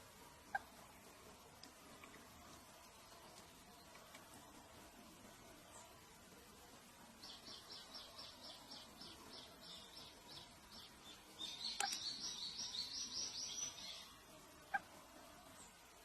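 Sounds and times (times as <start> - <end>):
small bird chirping: 7.2 - 14.9.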